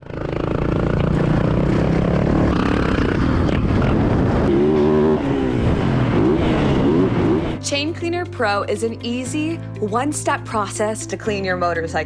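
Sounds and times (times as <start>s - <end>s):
motorcycle engine revving: 0.0s - 7.6s.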